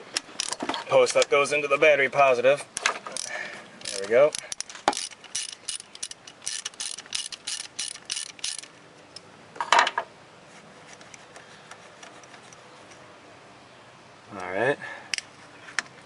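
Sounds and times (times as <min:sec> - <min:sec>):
socket wrench ratchet clicking: 0:03.2 - 0:08.7.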